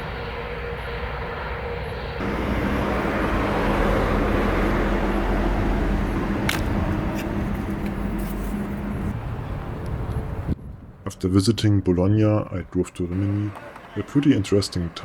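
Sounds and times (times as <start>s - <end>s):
vehicle drone: 0.0s - 10.6s.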